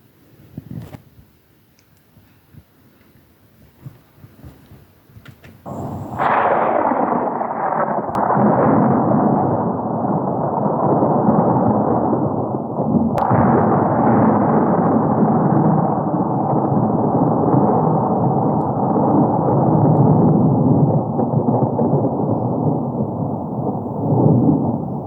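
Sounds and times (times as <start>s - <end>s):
sharp thunder cracks: 5.6s - 25.0s
thunder crash and rumble: 5.6s - 25.0s.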